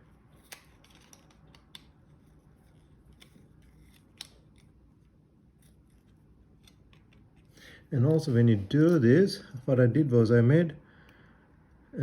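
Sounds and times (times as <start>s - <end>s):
faint metal parts clicking: 0.3s - 9.3s.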